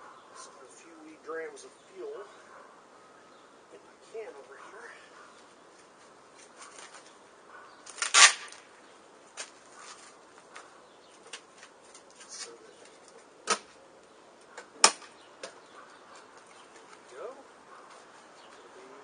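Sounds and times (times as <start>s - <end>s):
rustling scrape: 5.8s - 7.2s, 9.4s - 10.2s, 11.5s - 13.2s.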